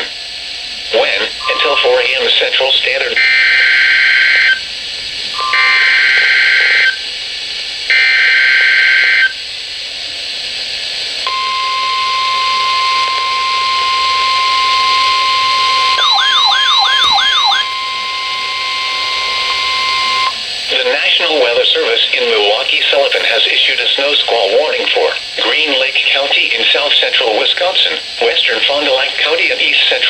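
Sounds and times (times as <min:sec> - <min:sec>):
steady warning alarm tone: 0:00.0 - 0:09.4, 0:11.2 - 0:30.0
harsh digital data screech: 0:01.0 - 0:04.6, 0:11.3 - 0:21.8
warbling siren-like tone: 0:11.3 - 0:20.5.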